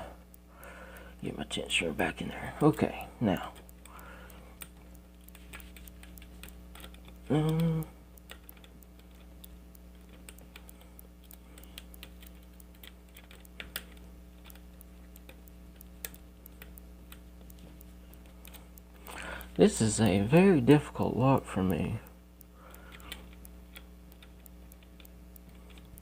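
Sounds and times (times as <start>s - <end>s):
faint electrical hum: 0.0s - 26.0s
person humming: 7.2s - 8.1s.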